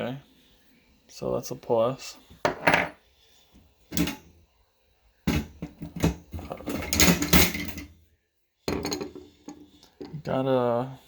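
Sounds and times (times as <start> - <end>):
metal tools knocking and clinking: 5.3 - 7.9, 8.7 - 10.2.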